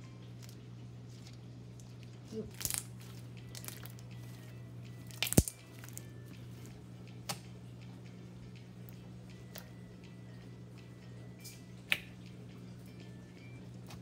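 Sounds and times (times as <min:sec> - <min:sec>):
slime being squished by hand: 0:05.0 - 0:06.0.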